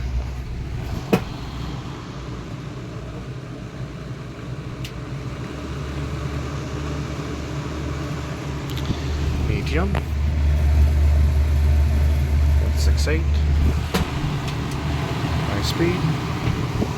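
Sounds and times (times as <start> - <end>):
box fan running: 0.0 - 16.9.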